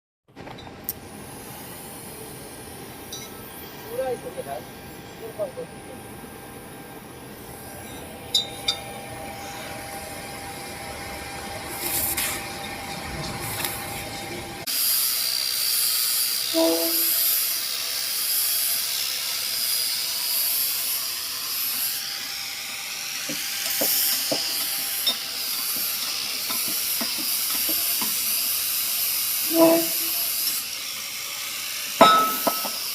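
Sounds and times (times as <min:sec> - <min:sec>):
low hum: 0:00.5 - 0:14.7
welding arc hissing: 0:00.8 - 0:32.9.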